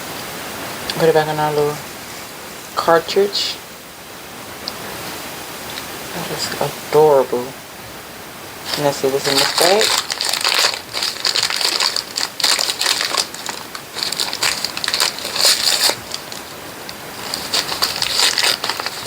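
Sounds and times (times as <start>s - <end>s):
plastic bag crinkling: 8.6s - 19.0s.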